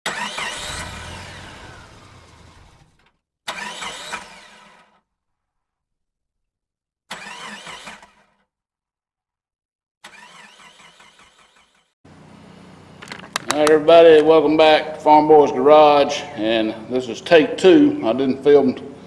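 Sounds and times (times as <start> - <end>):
vehicle engine bursts: 0.1 - 3.1.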